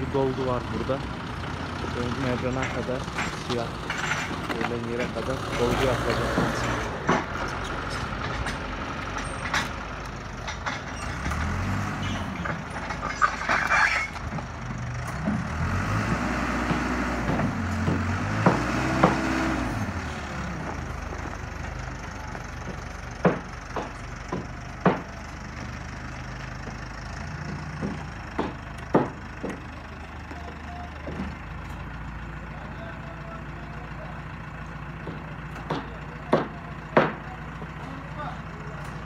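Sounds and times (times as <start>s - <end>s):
heavy engine revving: 0.0s - 39.0s
sharp knocks: 16.1s - 19.4s, 22.6s - 25.1s, 27.5s - 29.6s, 35.1s - 37.2s.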